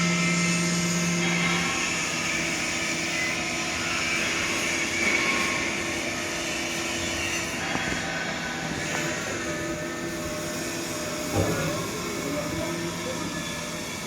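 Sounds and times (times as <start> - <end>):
backhoe mechanical hum: 0.0 - 14.0
high machine whine: 0.0 - 14.0.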